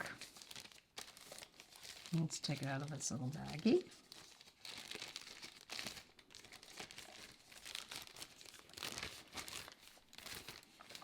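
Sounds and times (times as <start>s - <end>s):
plastic bag crinkling: 0.0s - 11.0s.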